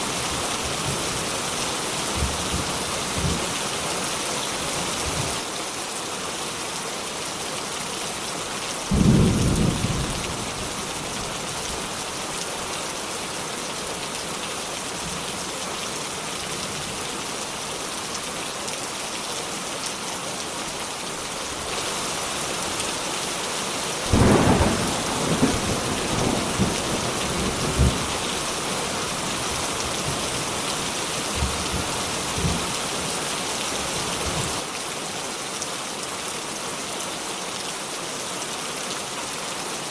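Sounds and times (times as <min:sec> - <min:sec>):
heavy rain hissing: 0:08.7 - 0:35.2
rolling thunder: 0:24.1 - 0:28.1.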